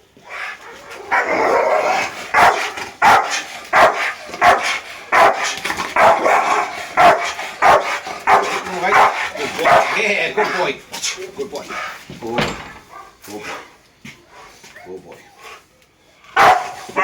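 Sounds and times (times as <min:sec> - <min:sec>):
dog barking: 0:00.3 - 0:10.8, 0:12.8 - 0:13.6, 0:16.3 - 0:17.0.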